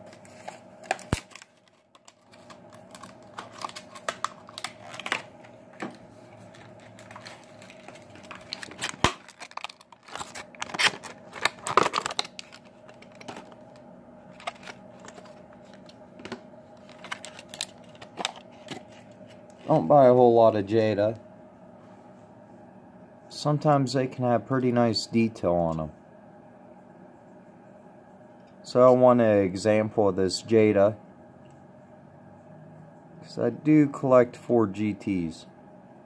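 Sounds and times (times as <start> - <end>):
packaging crinkling and tearing: 0.0 - 5.5, 6.3 - 19.8.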